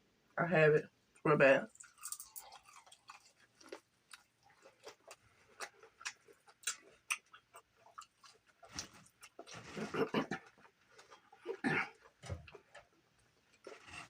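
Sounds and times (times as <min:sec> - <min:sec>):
person chewing: 0:01.7 - 0:14.0.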